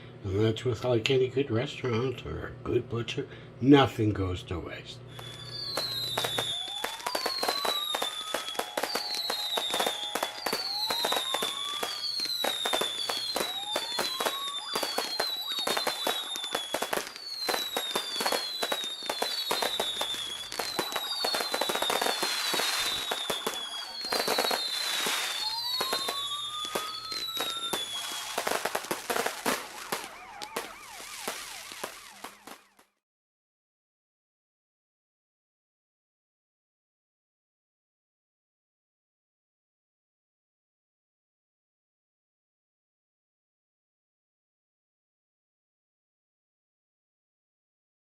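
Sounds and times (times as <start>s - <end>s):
high falling whistles: 5.1s - 32.8s
low rising whistle: 5.1s - 32.8s
fireworks crackling and popping: 5.1s - 33.0s.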